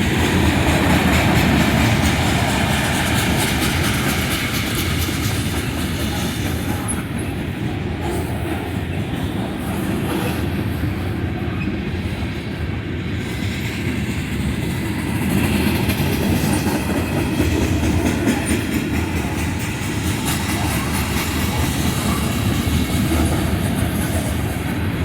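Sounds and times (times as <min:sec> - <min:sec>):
train wheels rumbling on rails: 0:00.0 - 0:25.0.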